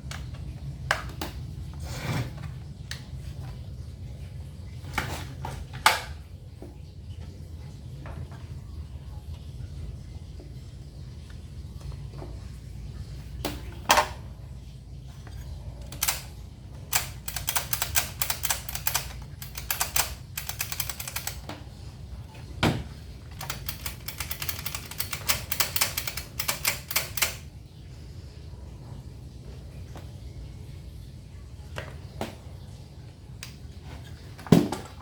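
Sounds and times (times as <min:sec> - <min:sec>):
rapid clicking: 0:15.8 - 0:16.3, 0:16.9 - 0:21.4, 0:23.3 - 0:27.4.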